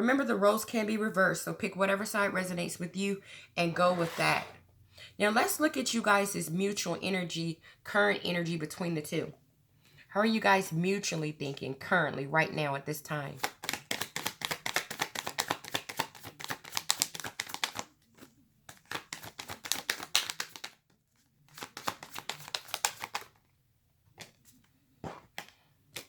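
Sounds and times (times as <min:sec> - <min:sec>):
cards being shuffled: 0:13.4 - 0:23.4.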